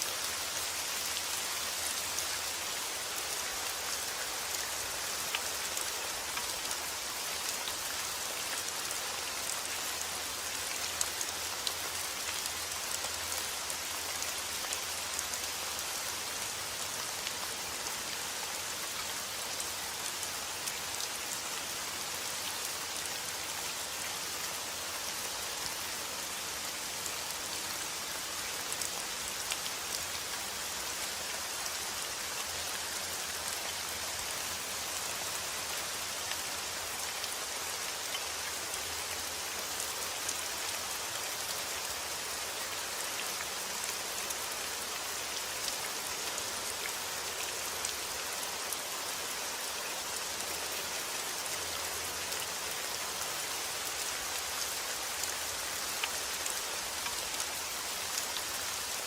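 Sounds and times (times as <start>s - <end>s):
rain falling: 0.0s - 59.0s.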